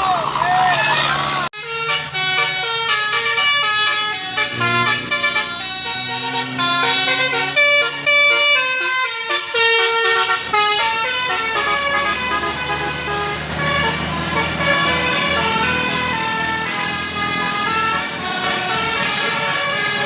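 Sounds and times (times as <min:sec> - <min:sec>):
musical bus air horn tune: 0:00.5 - 0:20.0.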